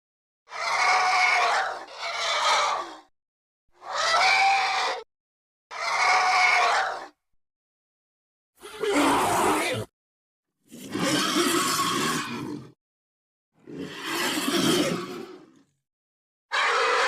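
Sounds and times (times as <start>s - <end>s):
rasping creature cries: 0.5s - 3.1s, 3.8s - 5.0s, 5.7s - 7.2s, 8.6s - 9.9s, 10.7s - 12.8s, 13.6s - 15.7s, 16.5s - 17.0s.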